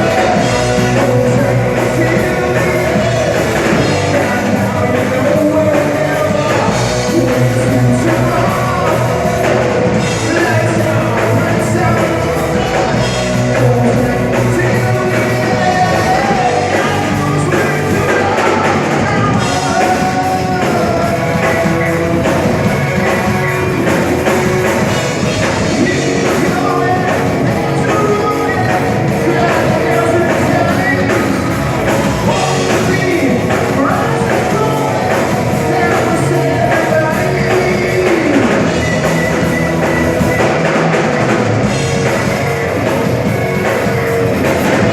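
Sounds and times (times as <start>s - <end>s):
live rock band playing: 0.0s - 44.9s
person singing: 0.0s - 44.9s.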